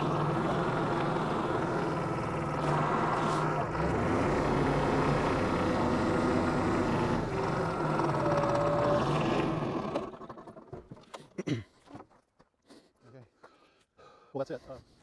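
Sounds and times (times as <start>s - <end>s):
tractor diesel engine running: 0.0s - 10.3s.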